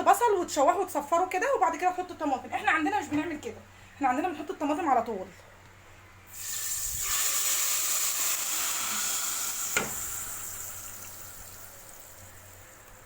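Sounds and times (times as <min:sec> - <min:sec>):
tomatoes sizzling in hot oil: 0:06.3 - 0:13.0.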